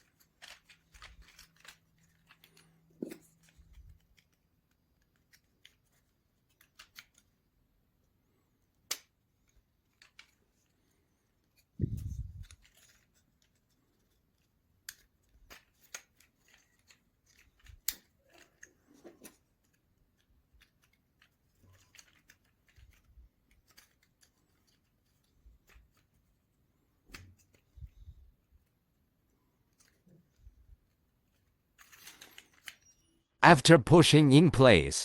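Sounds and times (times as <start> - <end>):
wooden model parts clicking: 0.0 - 7.4, 8.7 - 26.2.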